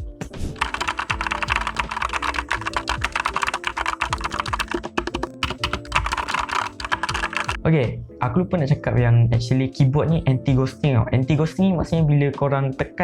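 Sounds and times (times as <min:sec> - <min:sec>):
fast mechanical keyboard typing: 0:00.6 - 0:07.6.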